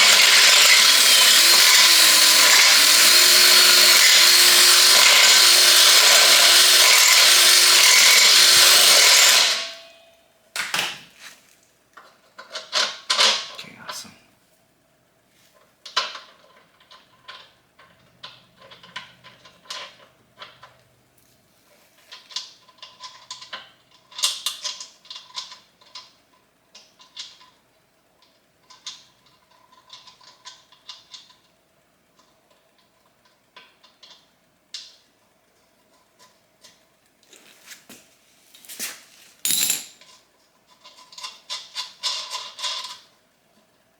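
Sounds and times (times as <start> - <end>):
metal parts clicking and clinking: 39.4 - 43.0.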